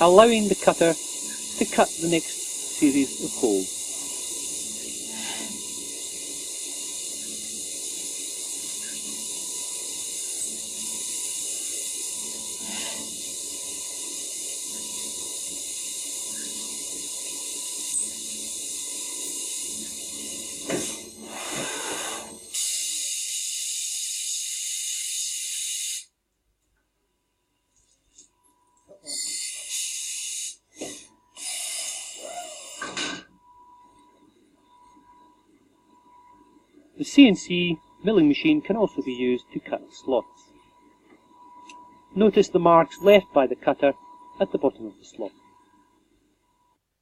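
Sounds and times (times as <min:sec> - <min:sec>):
coolant spray hissing: 0:00.0 - 0:19.8, 0:20.6 - 0:26.0, 0:29.3 - 0:30.6, 0:31.4 - 0:32.8
milling machine spindle running: 0:00.0 - 0:25.6.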